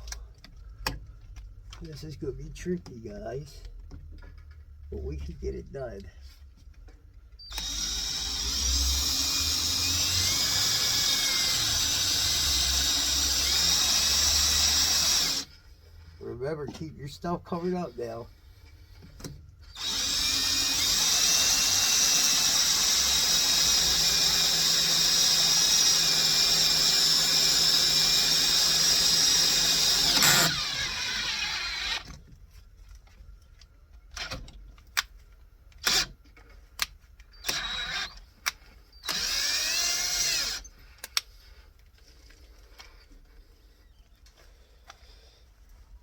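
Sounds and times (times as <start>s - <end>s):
power drill drilling: 7.5s - 15.5s, 19.6s - 32.2s, 35.8s - 36.1s, 37.3s - 38.3s, 39.0s - 40.7s.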